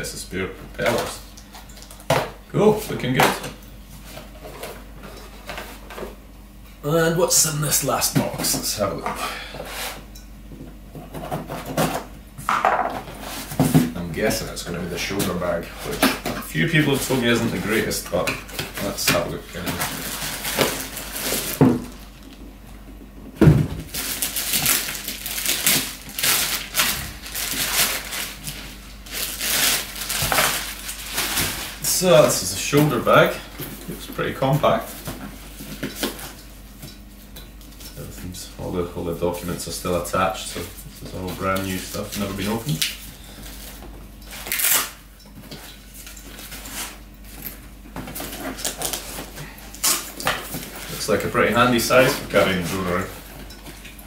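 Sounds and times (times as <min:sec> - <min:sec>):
cardboard packaging rustling: 0:15.0 - 0:22.4, 0:23.7 - 0:36.4, 0:45.6 - 0:53.8.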